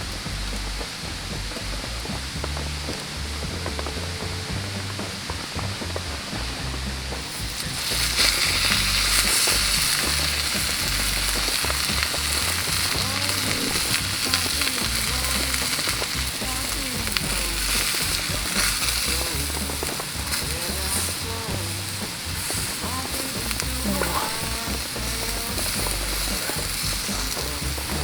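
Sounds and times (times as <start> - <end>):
steak sizzling: 0.0 - 28.0.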